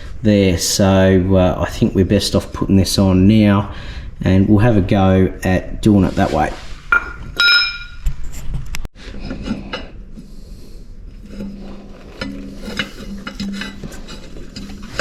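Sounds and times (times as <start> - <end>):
metal parts clicking and scraping: 11.2 - 15.0.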